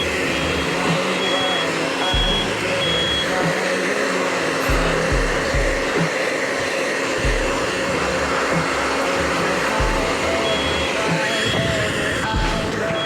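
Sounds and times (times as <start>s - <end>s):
hair dryer running: 0.0s - 13.0s
music with deep bass beat: 2.2s - 3.6s, 4.7s - 6.1s, 7.2s - 11.0s, 12.3s - 13.0s.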